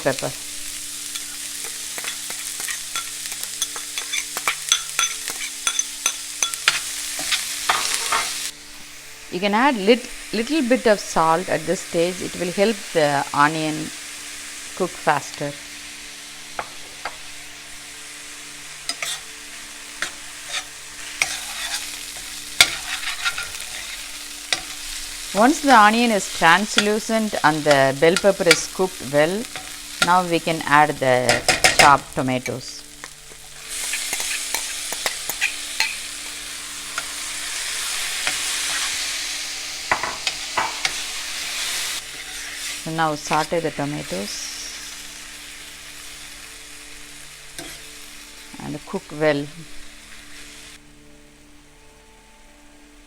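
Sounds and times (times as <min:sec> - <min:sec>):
vegetables sizzling in oil: 0:00.0 - 0:51.9
utensil clicking and scraping pan: 0:01.2 - 0:08.3, 0:18.9 - 0:19.2, 0:20.0 - 0:24.8, 0:33.4 - 0:36.0.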